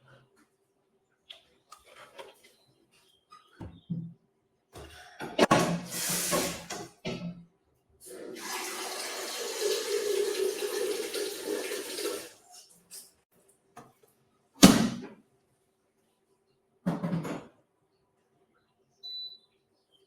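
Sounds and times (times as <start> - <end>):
water running into a cup: 8.1 - 12.4.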